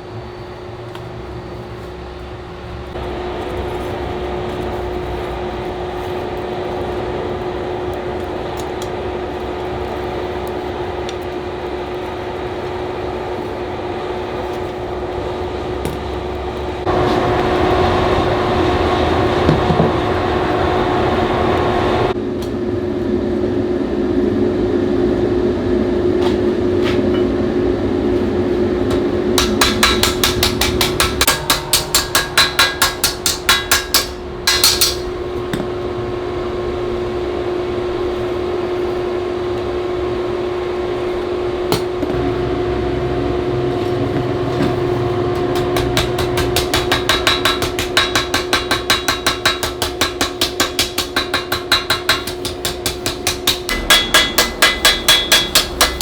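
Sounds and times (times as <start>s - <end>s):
machine hum: 0.0s - 56.0s
hammer striking steel: 28.9s - 35.8s, 43.8s - 56.0s.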